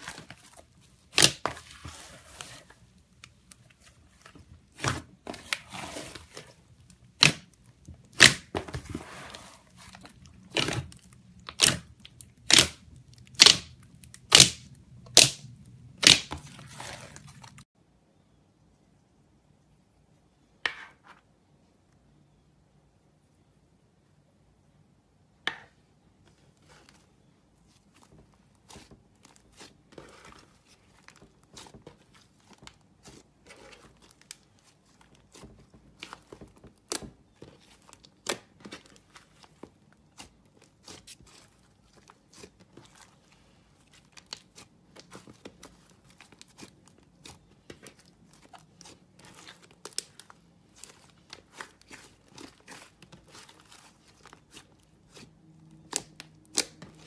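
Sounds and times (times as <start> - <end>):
slime squeezed crackling and popping: 9.9 - 17.5, 43.8 - 57.0.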